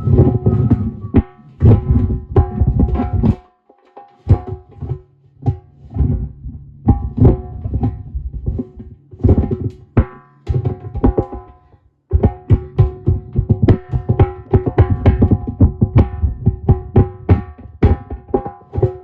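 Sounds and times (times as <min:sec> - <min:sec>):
rapid hand-drum rhythm: 0:00.0 - 0:19.0.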